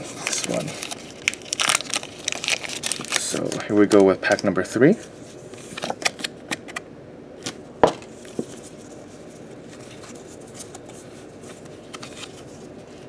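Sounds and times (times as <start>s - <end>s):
foil pack crinkling: 0.0s - 4.7s
foil pack snapping: 0.3s - 4.4s.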